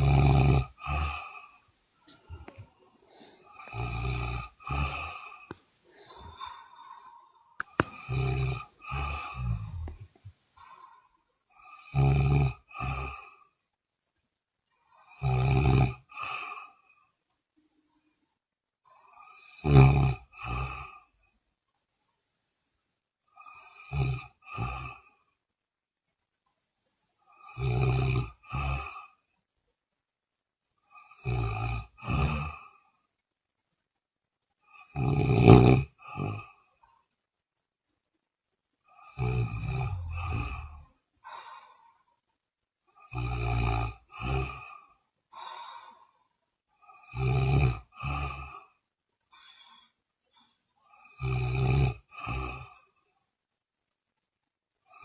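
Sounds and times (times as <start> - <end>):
person snoring: 0.0 - 13.4, 15.0 - 16.8, 19.0 - 21.1, 23.4 - 25.2, 27.3 - 29.2, 30.8 - 32.8, 34.7 - 36.7, 38.9 - 42.0, 42.9 - 46.2, 46.8 - 48.8, 50.8 - 52.9.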